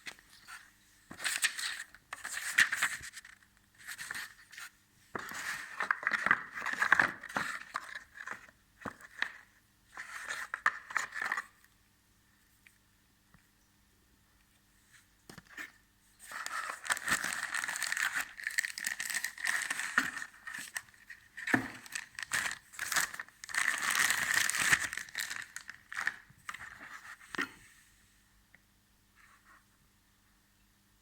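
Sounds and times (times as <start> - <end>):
packaging crinkling and rustling: 5.2 - 9.4, 15.4 - 27.1.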